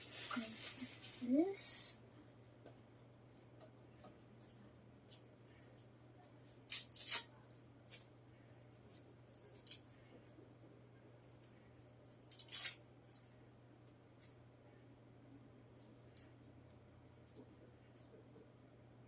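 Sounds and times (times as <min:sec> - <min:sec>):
plastic wrapping rustling: 0:00.0 - 0:01.9, 0:12.2 - 0:12.8.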